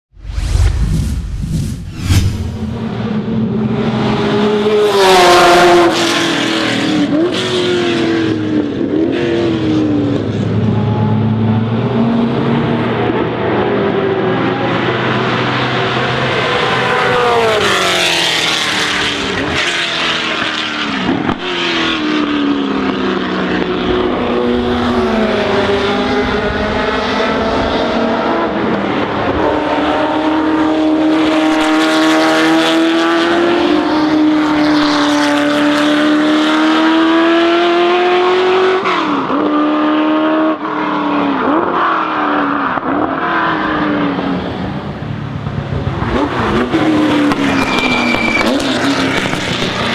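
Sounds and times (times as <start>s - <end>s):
racing car engine: 11.6s - 49.9s.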